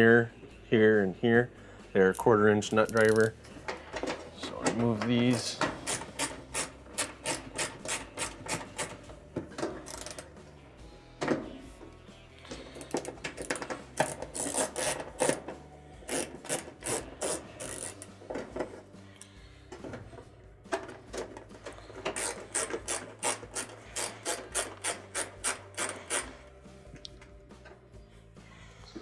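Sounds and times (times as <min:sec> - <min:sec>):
nut driver rasping on screws: 0:02.7 - 0:03.3, 0:05.3 - 0:09.0, 0:09.8 - 0:10.3, 0:12.8 - 0:18.1, 0:22.0 - 0:26.4.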